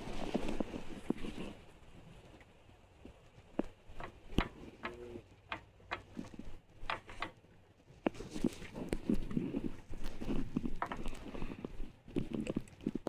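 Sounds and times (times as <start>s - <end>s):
light clicks and knocks: 3.1s - 7.4s, 10.0s - 13.0s.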